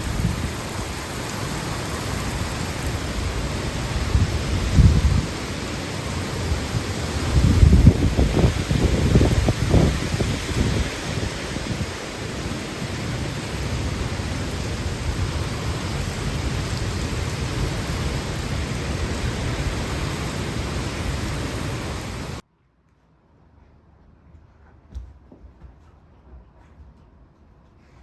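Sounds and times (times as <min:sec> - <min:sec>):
heavy rain pouring: 0:00.0 - 0:22.4
wind rumbling on microphone: 0:00.0 - 0:22.4.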